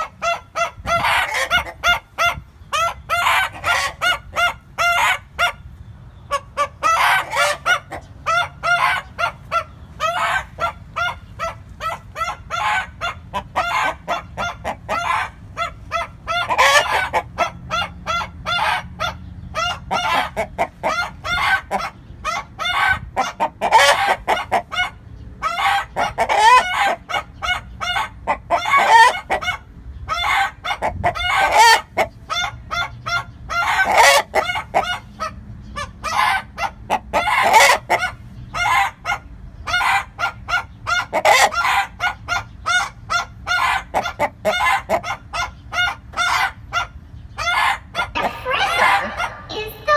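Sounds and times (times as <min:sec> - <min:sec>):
chickens clucking: 0:00.0 - 0:49.9
rooster crowing: 0:48.2 - 0:49.9.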